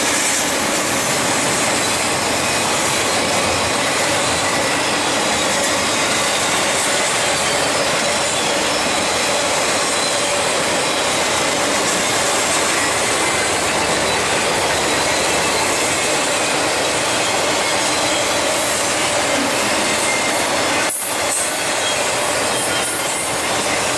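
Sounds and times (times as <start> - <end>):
steel wheels rushing on rail: 0.0 - 23.9
faint wheel squeal: 21.3 - 23.9.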